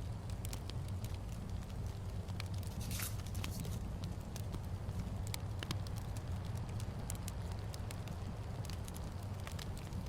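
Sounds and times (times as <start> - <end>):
wood fire crackling: 0.0 - 10.0.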